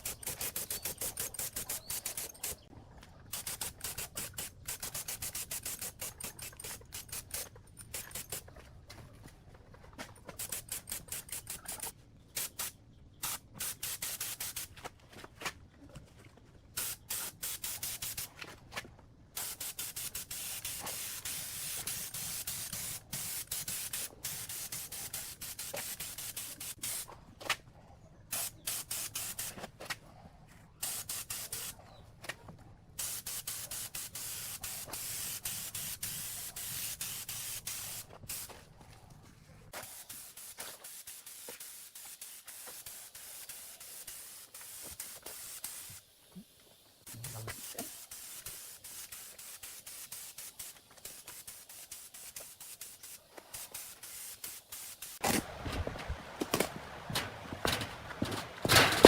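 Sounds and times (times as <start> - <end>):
compressed air spray hissing: 0.0 - 2.6, 3.4 - 7.4, 10.4 - 14.7, 16.8 - 18.3, 19.4 - 27.0, 28.3 - 29.6, 30.8 - 31.8, 33.0 - 38.6, 39.8 - 46.1, 47.0 - 55.2.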